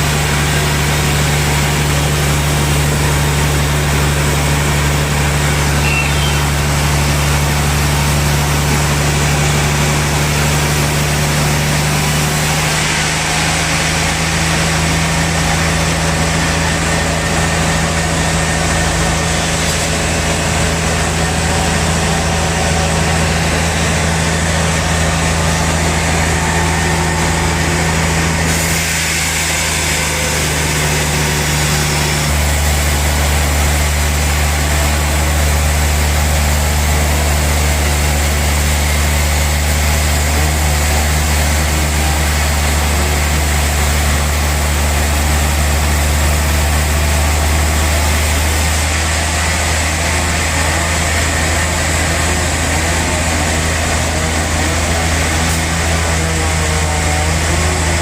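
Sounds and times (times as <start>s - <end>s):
sawmill machinery sawing log: 0.0s - 58.0s
low hum: 13.3s - 33.8s.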